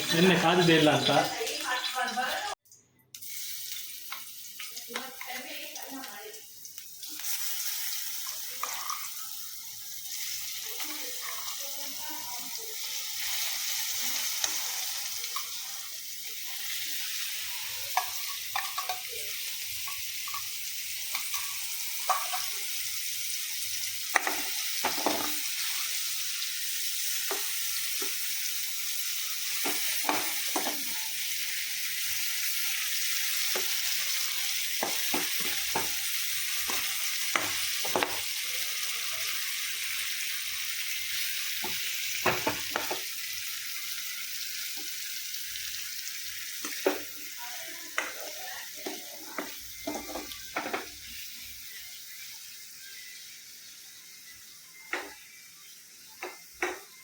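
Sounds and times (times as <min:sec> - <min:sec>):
cheese sizzling in hot oil: 0:00.0 - 0:57.0
spatula scraping and tapping: 0:34.8 - 0:36.0.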